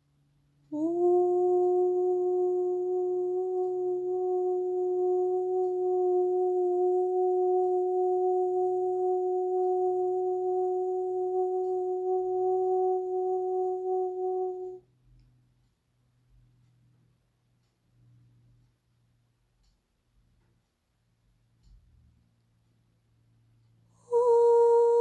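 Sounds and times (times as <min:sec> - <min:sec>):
steady held tone: 0:00.7 - 0:14.9, 0:23.9 - 0:25.0.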